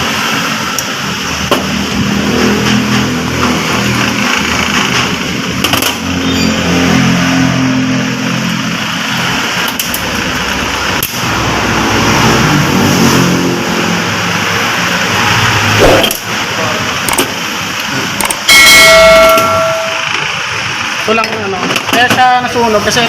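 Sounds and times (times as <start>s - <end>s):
vehicle engine running: 0.0s - 21.1s.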